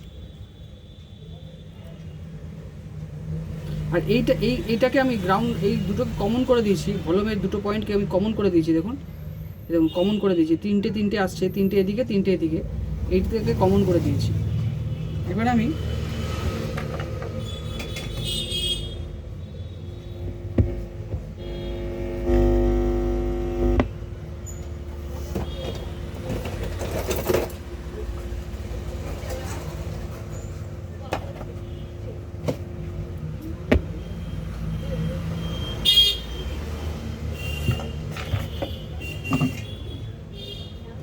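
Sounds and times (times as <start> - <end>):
traffic rumble: 2.0 - 41.0
vehicle horn: 17.4 - 24.1, 35.6 - 36.4.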